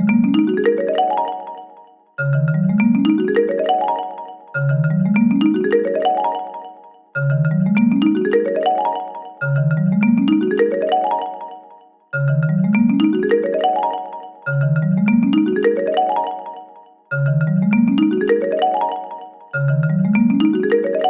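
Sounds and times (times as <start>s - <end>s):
mallet instrument ascending glissando: 17.2s - 21.0s.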